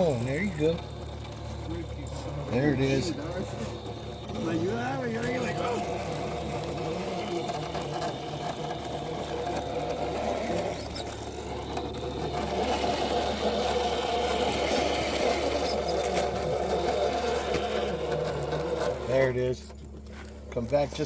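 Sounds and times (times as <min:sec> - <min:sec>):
toy car electric motor whining: 0:00.0 - 0:21.0.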